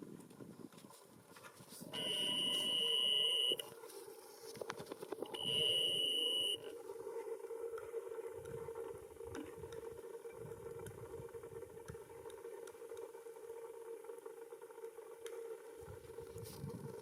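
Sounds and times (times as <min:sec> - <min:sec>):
loud high whine: 0:02.0 - 0:03.6, 0:05.3 - 0:06.8.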